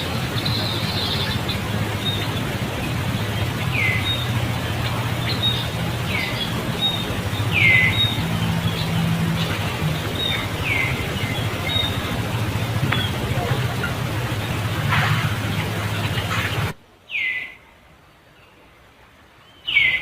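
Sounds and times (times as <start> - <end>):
outdoor background noise: 0.0 - 20.0.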